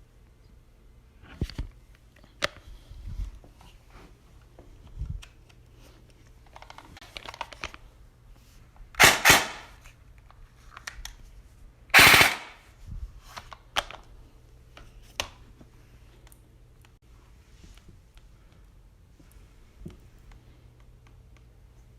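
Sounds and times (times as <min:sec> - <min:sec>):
airsoft rifle bursts: 0:09.0 - 0:09.8, 0:11.9 - 0:12.6.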